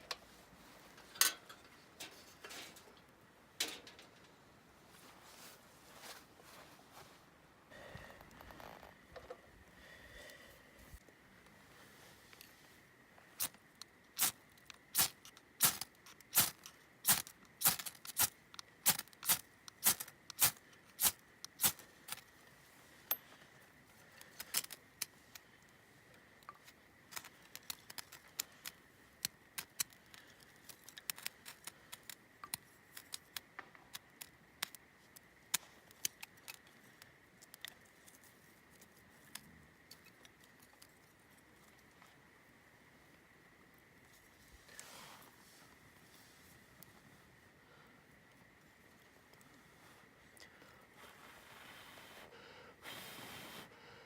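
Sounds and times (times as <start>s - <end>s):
sharp clicks and snaps: 27.1s - 38.2s.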